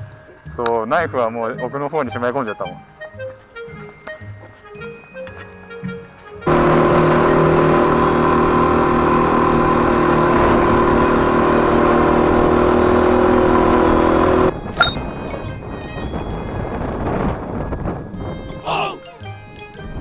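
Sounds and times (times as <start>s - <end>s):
motorcycle engine running: 6.5s - 14.5s
rush of riding: 6.5s - 14.6s.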